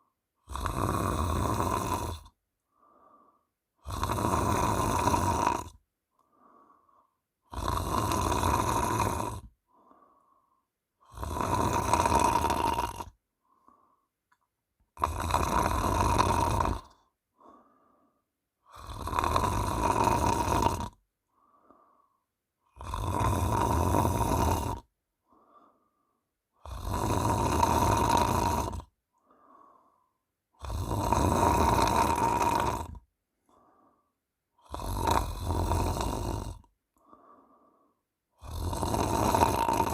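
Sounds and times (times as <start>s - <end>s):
woman snoring loudly: 0.4s - 2.4s, 3.8s - 5.8s, 7.5s - 9.6s, 11.0s - 13.2s, 15.0s - 17.6s, 18.6s - 21.0s, 22.7s - 24.9s, 26.6s - 29.0s, 30.6s - 33.1s, 34.6s - 36.7s, 38.4s - 39.9s
soft breaths: 2.2s - 7.3s, 8.6s - 10.8s, 13.4s - 14.5s, 16.8s - 18.9s, 21.2s - 22.4s, 25.2s - 26.3s, 29.1s - 30.3s, 33.4s - 34.2s, 34.8s - 39.7s.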